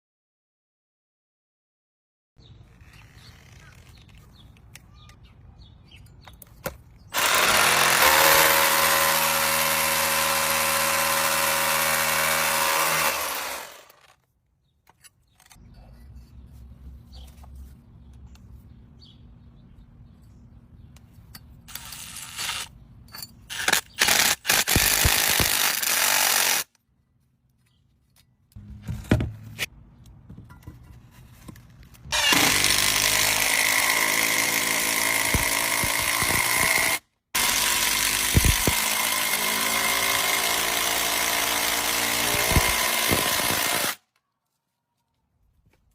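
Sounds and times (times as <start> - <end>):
power tool motor whine: 7.2 - 14.1, 32.1 - 44.0.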